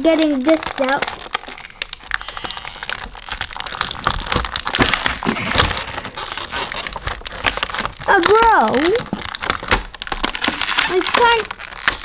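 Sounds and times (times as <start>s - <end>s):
plastic packaging tray crinkling: 0.0s - 12.0s.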